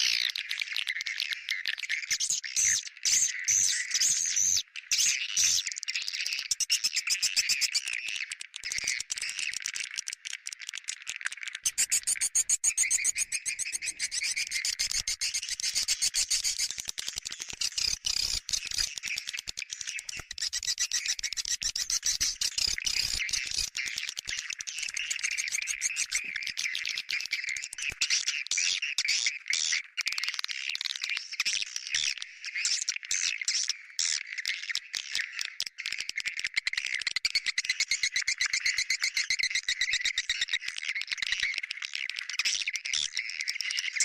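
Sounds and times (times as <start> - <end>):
high twittering bird chirps: 11.6 - 16.7, 17.6 - 27.6.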